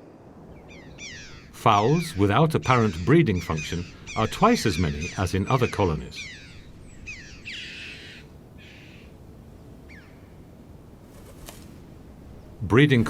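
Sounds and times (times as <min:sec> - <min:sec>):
birds calling harshly: 0:00.6 - 0:09.2.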